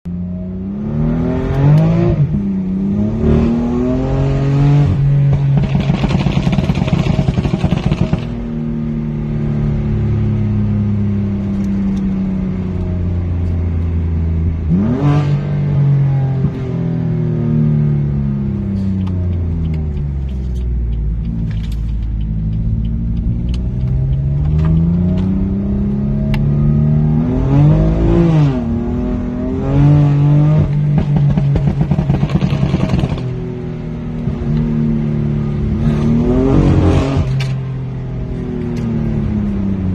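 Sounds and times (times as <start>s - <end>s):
car engine revving: 0.2s - 39.9s
exhaust pops and crackles: 5.3s - 8.4s, 30.7s - 33.4s.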